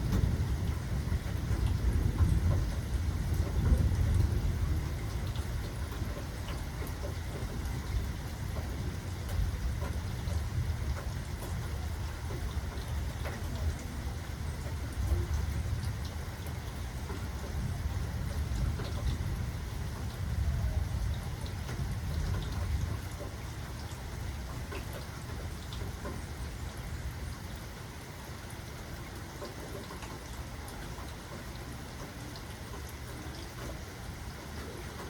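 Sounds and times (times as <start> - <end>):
low rumble of thunder: 0.0 - 27.6
steady rain falling: 0.0 - 35.0
water drips: 0.0 - 35.0.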